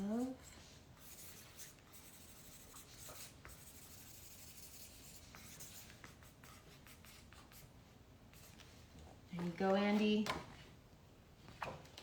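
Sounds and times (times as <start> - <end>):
pen scratching on paper: 1.0 - 7.6.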